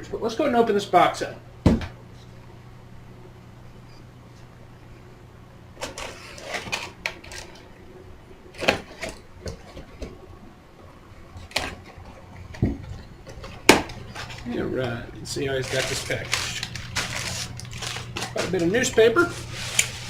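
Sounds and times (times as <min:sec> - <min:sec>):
steady low hum: 0:00.0 - 0:20.0
cardboard flaps scraping and rustling: 0:15.5 - 0:20.0
packing tape ripping: 0:15.6 - 0:20.0.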